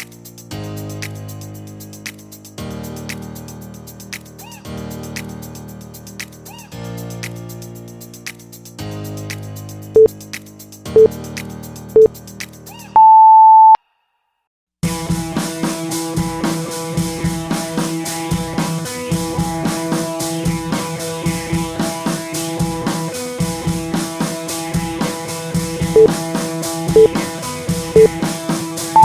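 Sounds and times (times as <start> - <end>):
interval timer beeps: 13.0 - 13.8
music with drum beat and guitar: 14.8 - 29.0.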